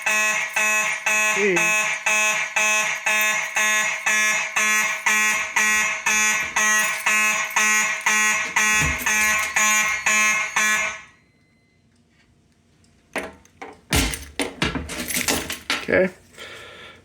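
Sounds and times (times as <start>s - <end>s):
fire alarm horns pulsing: 0.0s - 11.8s.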